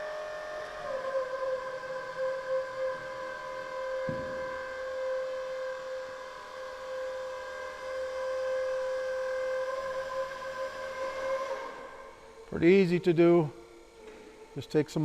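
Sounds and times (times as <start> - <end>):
dull thump: 4.1 - 4.4.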